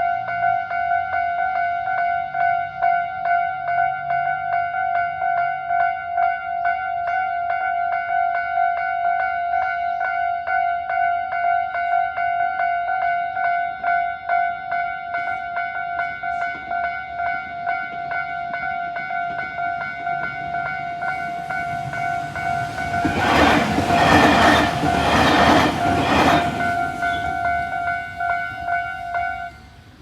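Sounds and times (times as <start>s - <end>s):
level-crossing warning bells ringing: 0.4s - 30.0s
train wheels clattering over rail joints: 21.0s - 27.8s.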